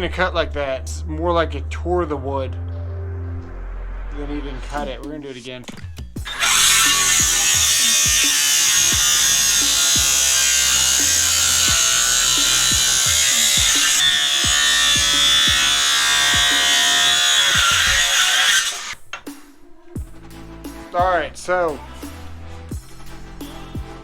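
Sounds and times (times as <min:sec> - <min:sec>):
circular saw cutting wood: 0:06.2 - 0:19.0.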